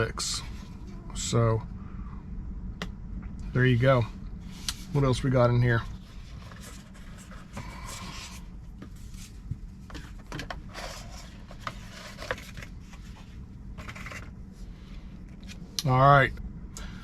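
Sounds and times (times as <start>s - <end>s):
steady low hum: 0.0s - 17.0s
packaging rustling: 9.0s - 14.4s.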